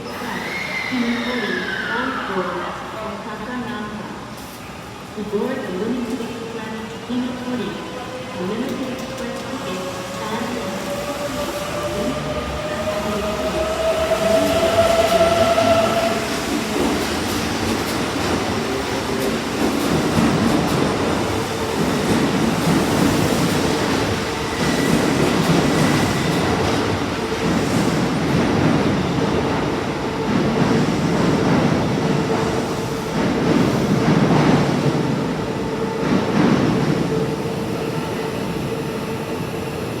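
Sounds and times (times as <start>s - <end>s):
train wheels clattering on track: 13.9s - 35.1s.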